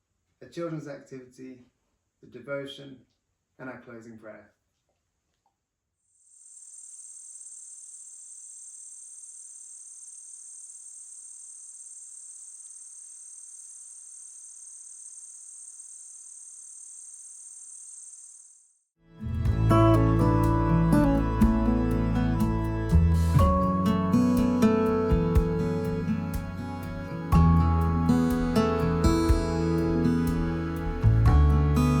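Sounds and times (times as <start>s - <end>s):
high-pitched insect trill: 6.1s - 18.8s
instrumental music: 19.2s - 32.0s.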